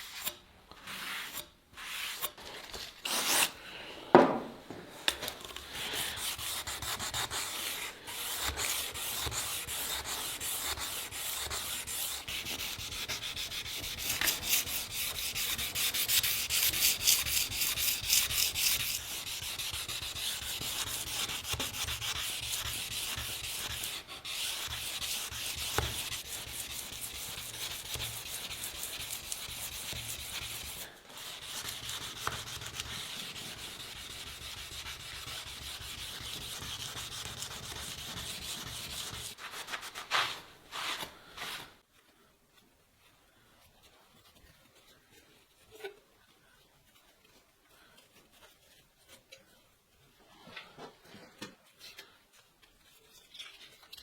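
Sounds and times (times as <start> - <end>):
sandpaper rubbing: 0.0 - 3.5, 5.7 - 41.7.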